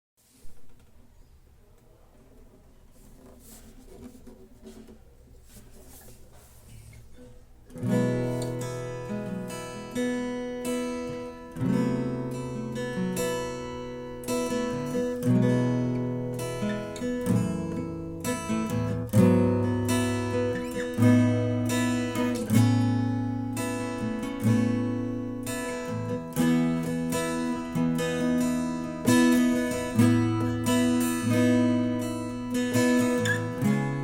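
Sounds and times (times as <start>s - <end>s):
acoustic guitar chords strummed: 7.2s - 34.0s.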